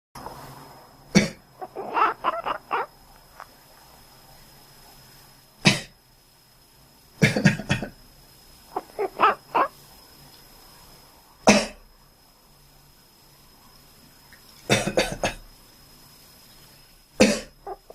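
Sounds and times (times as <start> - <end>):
person coughing: 1.2 - 1.4, 11.5 - 11.8, 14.7 - 15.4, 17.2 - 17.5
cat making quacking calls: 1.6 - 2.9, 8.8 - 9.7.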